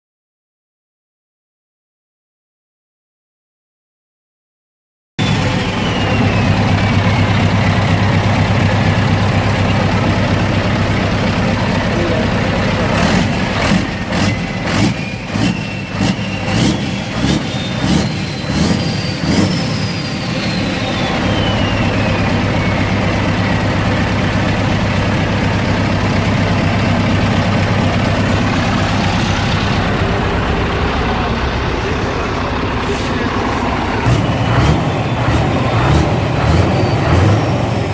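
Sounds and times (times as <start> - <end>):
turbo whistle: 5.2 - 9.9, 14.0 - 24.5, 34.0 - 37.6
truck engine idling and revving: 5.2 - 37.9.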